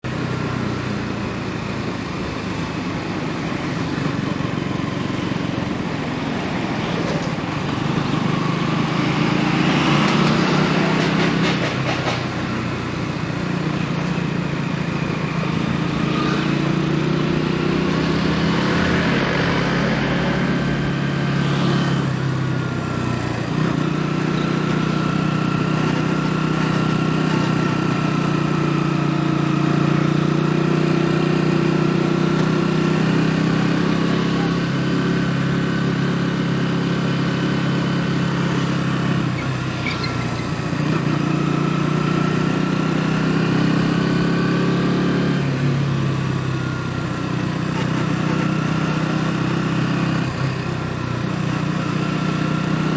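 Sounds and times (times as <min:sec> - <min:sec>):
motorcycle engine running: 0:00.0 - 0:52.9
road and wind noise: 0:00.0 - 0:52.9.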